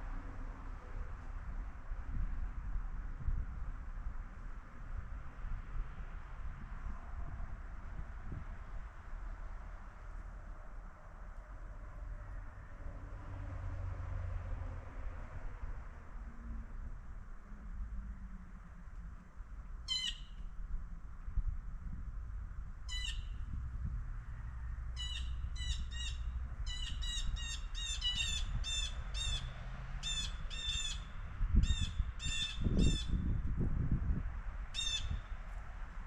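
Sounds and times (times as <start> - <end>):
bird squawking: 19.9 - 20.3, 22.9 - 23.3, 25.0 - 29.5.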